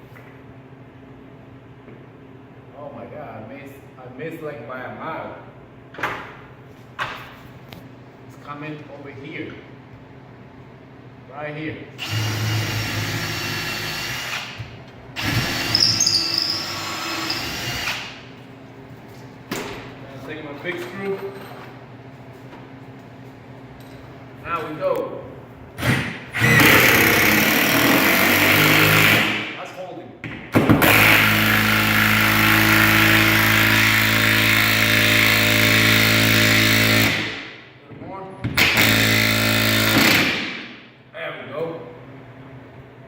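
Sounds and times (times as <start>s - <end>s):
power drill boring into wood: 12.0s - 14.5s, 15.2s - 18.0s, 26.4s - 29.2s
power drill driving screw into wood: 12.0s - 14.6s, 15.2s - 18.2s, 25.8s - 29.4s, 30.7s - 37.4s, 38.6s - 40.5s.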